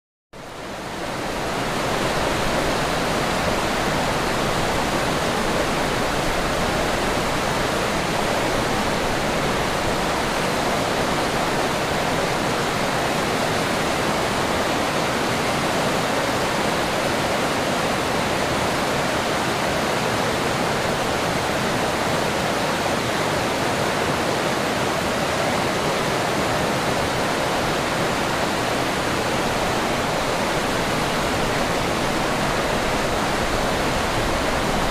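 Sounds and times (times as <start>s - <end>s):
river water rushing over rocks: 0.4s - 34.9s.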